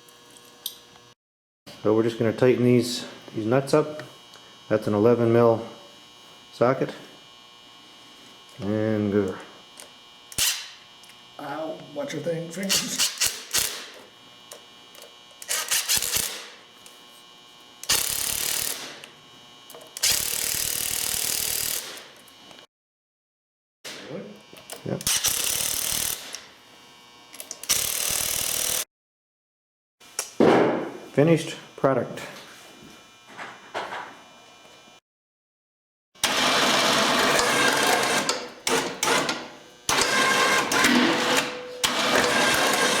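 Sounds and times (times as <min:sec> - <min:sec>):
ratchet wrench clicking: 0:15.4 - 0:16.4, 0:17.9 - 0:18.8, 0:20.0 - 0:21.8, 0:25.1 - 0:26.3, 0:27.6 - 0:28.8
electric winch whirring: 0:36.2 - 0:43.0.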